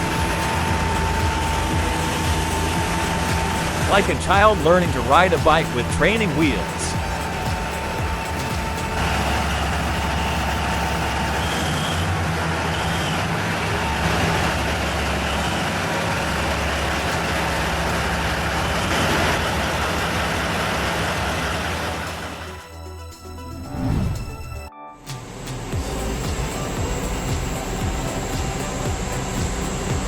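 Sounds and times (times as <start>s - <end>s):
heavy machine engine droning: 0.0s - 22.6s.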